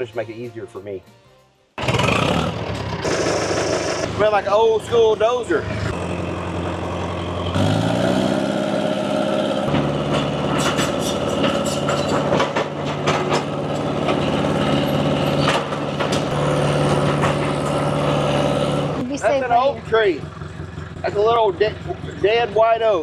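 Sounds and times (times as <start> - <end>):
diesel engine revving: 1.8 - 23.0
sharp knocks and clanks: 9.6 - 18.7.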